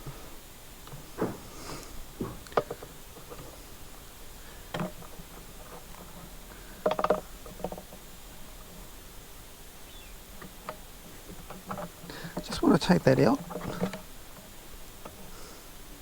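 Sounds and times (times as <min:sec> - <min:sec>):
small parts knocking and clicking: 0:04.7 - 0:08.9.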